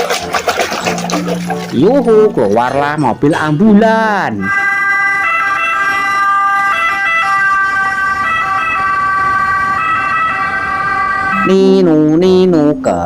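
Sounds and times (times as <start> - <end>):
ambulance siren: 4.3 - 12.4.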